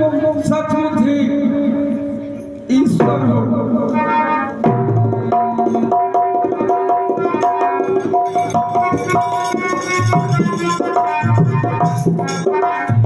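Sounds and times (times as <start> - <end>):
hand drum beating: 4.6 - 13.0.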